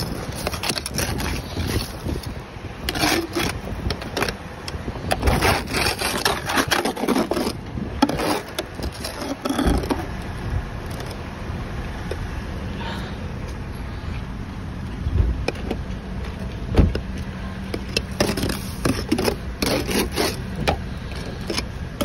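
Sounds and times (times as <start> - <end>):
ice scraper scraping ice: 0.0 - 4.4, 5.0 - 10.1, 17.8 - 22.0.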